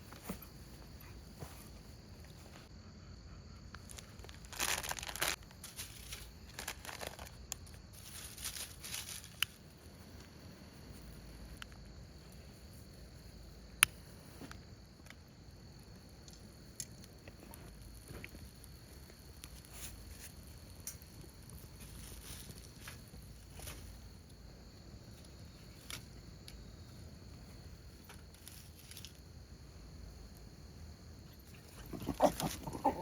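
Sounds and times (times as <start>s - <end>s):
insects chirring: 0.0s - 33.0s
crinkling and rustling: 3.8s - 9.8s, 16.2s - 24.2s, 27.5s - 29.3s.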